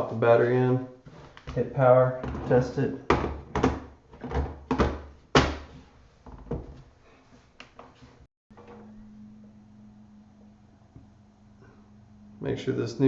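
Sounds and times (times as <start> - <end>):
faint steady hum: 8.6 - 13.0.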